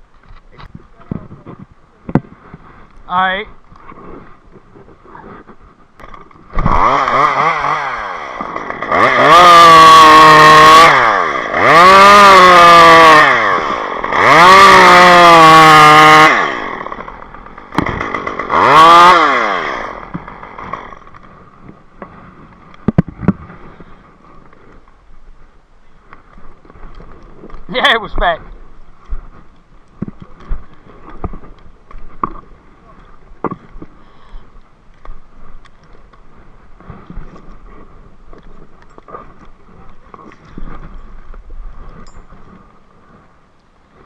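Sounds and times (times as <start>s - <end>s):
gas chainsaw revving: 6.0s - 21.5s.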